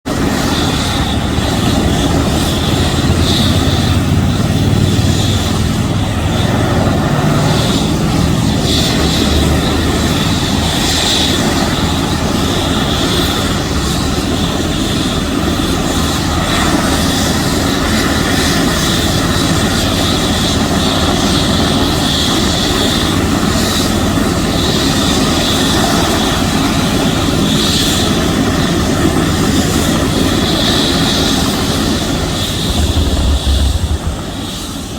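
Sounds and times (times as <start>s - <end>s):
high turbine whine: 0.1s - 19.9s, 30.7s - 34.9s
helicopter rotor chop: 0.1s - 34.9s.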